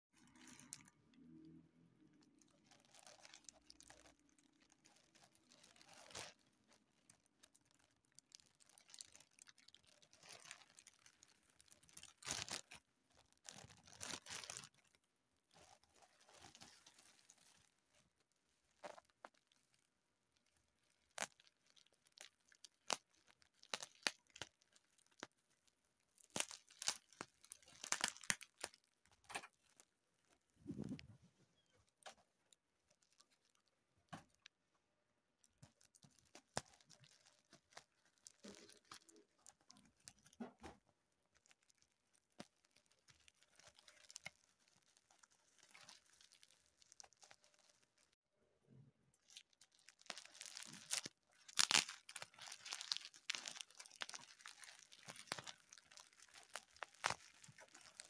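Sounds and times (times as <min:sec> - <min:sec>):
crinkling and tearing: 0:00.2 - 0:34.5, 0:35.4 - 0:48.2, 0:49.2 - 0:58.0.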